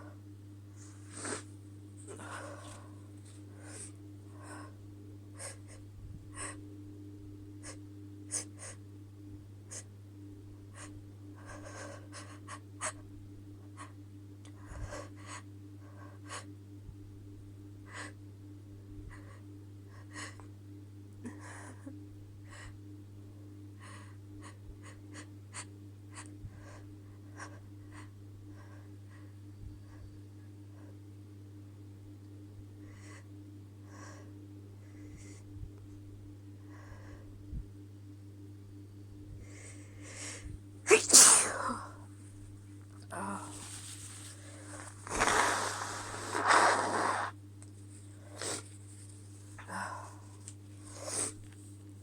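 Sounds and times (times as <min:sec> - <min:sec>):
steady low hum: 0:00.0 - 0:52.0
woman sniffing: 0:40.9 - 0:41.9, 0:43.3 - 0:47.4, 0:50.9 - 0:51.4.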